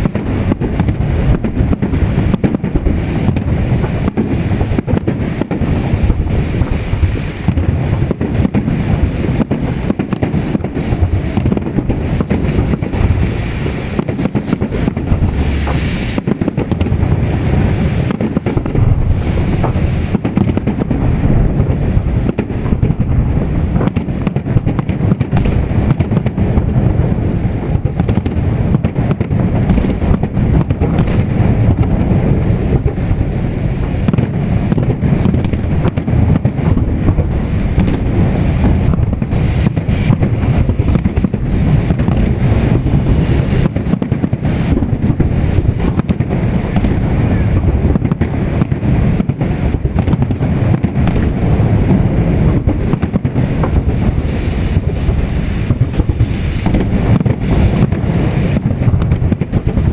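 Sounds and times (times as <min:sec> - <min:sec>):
fireworks bangs and crackles: 0:00.0 - 0:59.9
wind buffeting microphone: 0:00.0 - 0:59.9
low rumble: 0:14.7 - 0:59.9.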